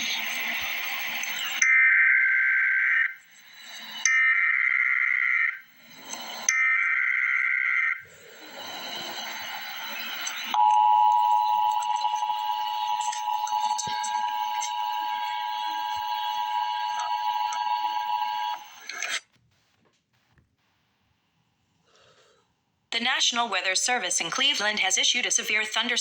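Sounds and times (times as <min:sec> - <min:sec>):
two-tone digital data burst: 0:03.4 - 0:19.2
two-tone attention signal: 0:08.6 - 0:18.8.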